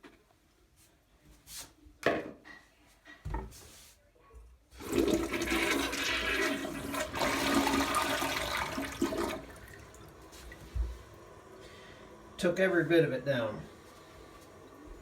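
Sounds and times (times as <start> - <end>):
toilet flushing water rush: 4.8 - 15.0.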